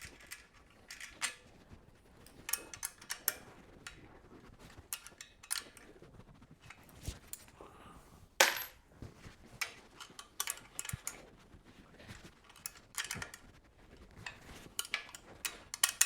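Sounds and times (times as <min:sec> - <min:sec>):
metal bars clinking and knocking: 0:08.4 - 0:08.8.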